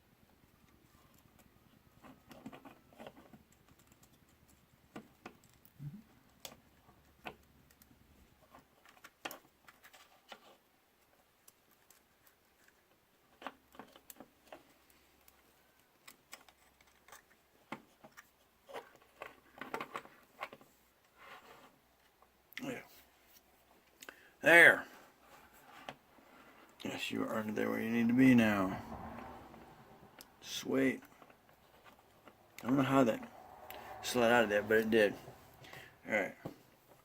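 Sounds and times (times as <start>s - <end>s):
small clicks and taps: 0.6s - 10.5s.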